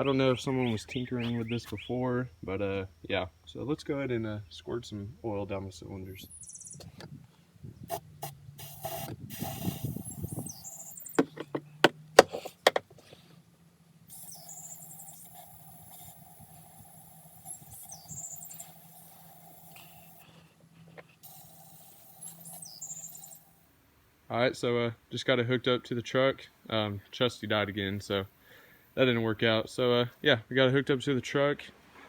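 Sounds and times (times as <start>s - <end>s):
birds chirping: 0.0s - 2.6s, 3.4s - 23.7s
steady low hum: 0.0s - 31.9s
sharp clicks and knocks: 10.3s - 13.2s.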